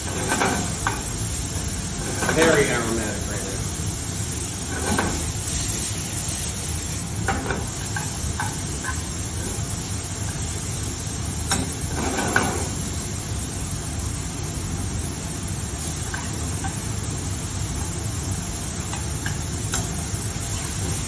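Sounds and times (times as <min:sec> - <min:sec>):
utensil scraping a pan: 0:00.0 - 0:03.3, 0:04.5 - 0:10.4, 0:11.5 - 0:12.9
beef sizzling in a pan: 0:00.0 - 0:21.0.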